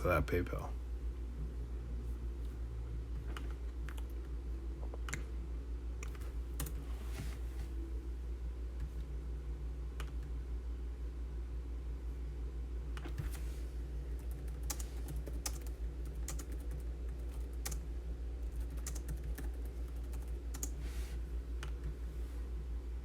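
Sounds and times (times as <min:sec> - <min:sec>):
steady low hum: 0:00.0 - 0:23.0
computer keyboard keystrokes: 0:14.1 - 0:17.8, 0:18.5 - 0:20.8.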